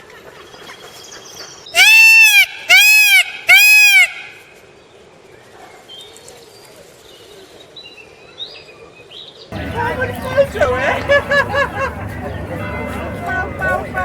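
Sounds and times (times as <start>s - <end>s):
peacock wailing calls: 1.8s - 4.6s.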